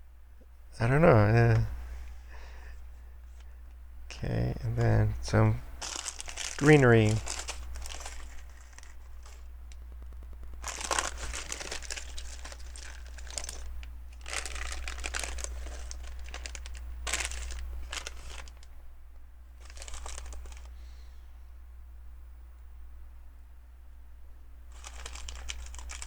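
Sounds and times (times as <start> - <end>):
plastic bag crinkling: 5.8 - 18.7, 19.6 - 20.8, 24.7 - 26.0.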